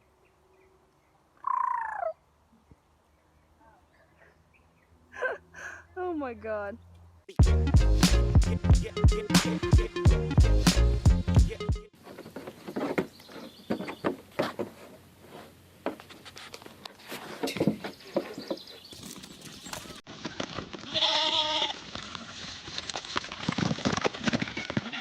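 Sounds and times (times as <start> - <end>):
music: 7.4 - 11.9
animal bleat: 20.8 - 21.8, 24.6 - 25.0.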